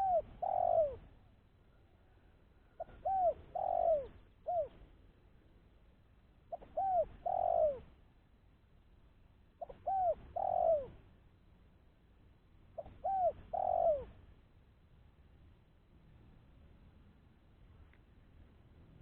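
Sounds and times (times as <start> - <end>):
dove cooing: 0.0 - 1.2, 2.6 - 4.9, 6.5 - 8.0, 9.6 - 11.1, 12.8 - 14.2.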